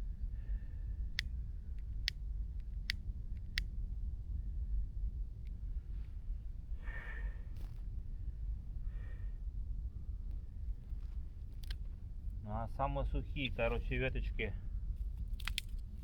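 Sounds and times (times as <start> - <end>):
campfire crackling: 10.3 - 16.0.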